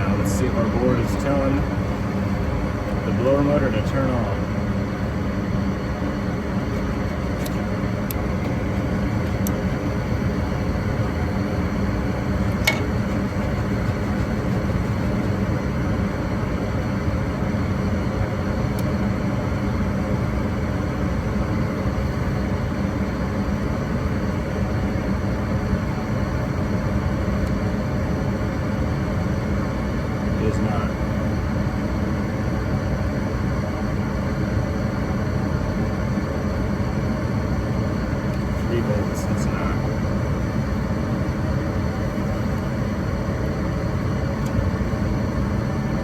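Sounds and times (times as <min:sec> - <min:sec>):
gas furnace humming: 0:00.0 - 0:46.0.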